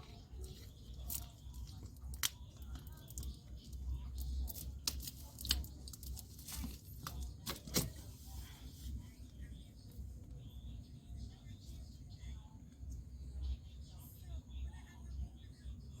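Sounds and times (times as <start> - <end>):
rustling and crinkling: 4.4 - 9.0.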